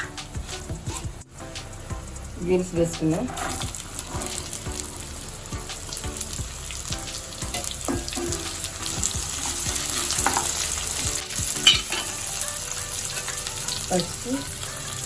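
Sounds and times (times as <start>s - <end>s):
green beans sizzling in oil: 0.0s - 15.0s
spatula scraping and knocking pan: 3.3s - 4.6s, 7.4s - 12.4s.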